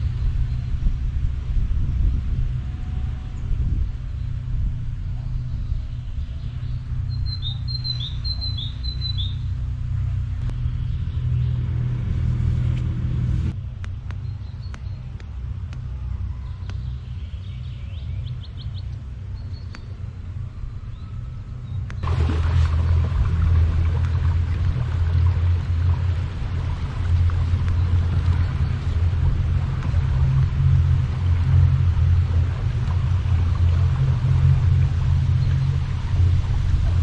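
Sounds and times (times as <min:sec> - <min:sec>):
low motor rumble: 0:00.0 - 0:37.0
bird chirping: 0:05.3 - 0:09.5.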